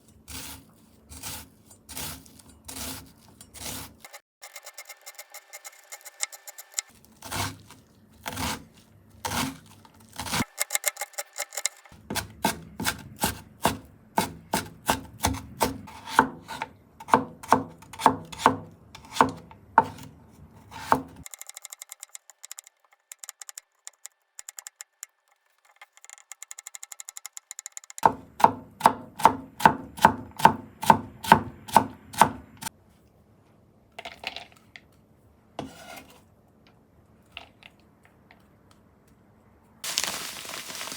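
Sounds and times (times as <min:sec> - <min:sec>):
knife chopping on cutting board: 0:05.8 - 0:21.2, 0:28.0 - 0:32.7.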